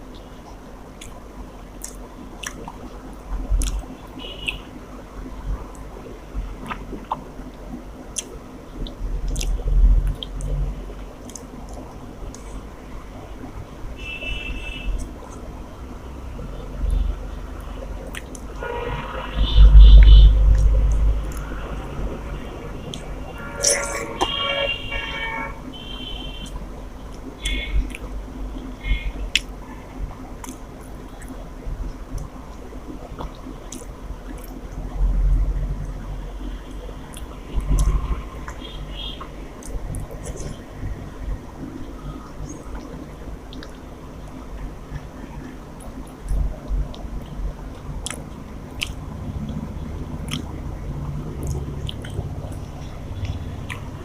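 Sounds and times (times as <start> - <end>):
wet chewing mouth sounds: 1.8 - 2.8, 8.1 - 10.6, 18.0 - 18.5, 26.4 - 28.1, 45.8 - 50.6, 51.2 - 54.0.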